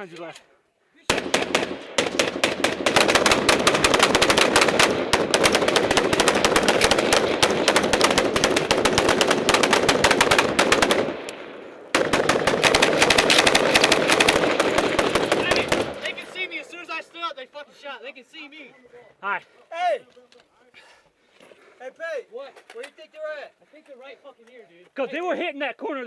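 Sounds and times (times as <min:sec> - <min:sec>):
machine gun firing bursts: 0:01.1 - 0:11.2, 0:11.9 - 0:16.4.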